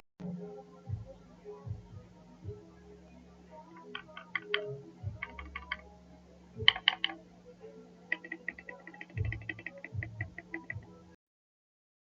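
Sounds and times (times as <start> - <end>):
mechanical keyboard typing: 3.8 - 5.8, 6.6 - 7.2, 8.1 - 10.8.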